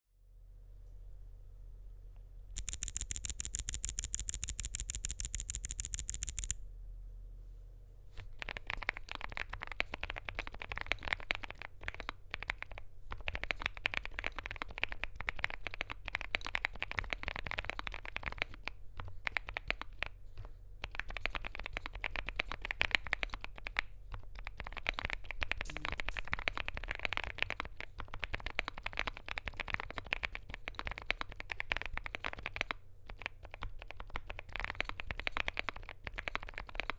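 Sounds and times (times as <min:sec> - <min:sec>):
rapid sharp high clicks: 0:02.6 - 0:06.6
typing on mechanical keyboard: 0:02.6 - 0:06.6.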